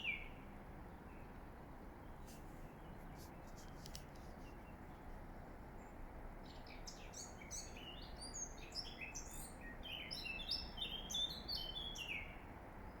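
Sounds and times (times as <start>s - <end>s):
songbird singing trills: 6.5s - 12.4s.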